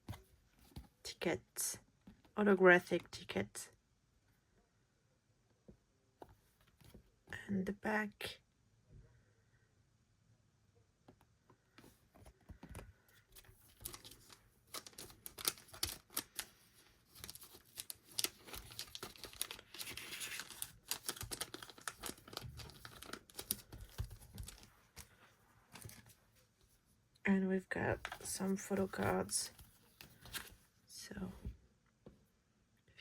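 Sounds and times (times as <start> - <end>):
packaging rustling and tearing: 13.4 - 24.7.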